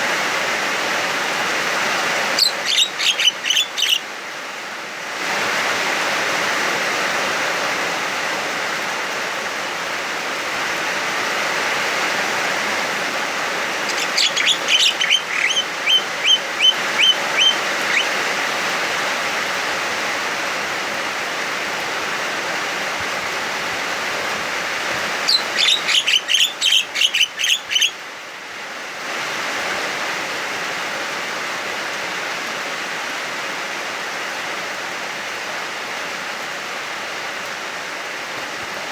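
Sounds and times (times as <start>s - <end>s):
heavy rain hissing: 0.0s - 38.9s
bird giving sharp repeated calls: 2.4s - 4.0s, 13.8s - 18.2s, 25.2s - 27.9s.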